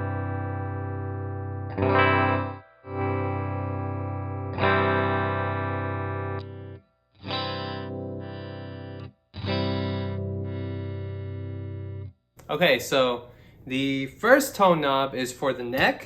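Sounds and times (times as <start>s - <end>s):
electric guitar strummed chords: 0.0s - 12.2s.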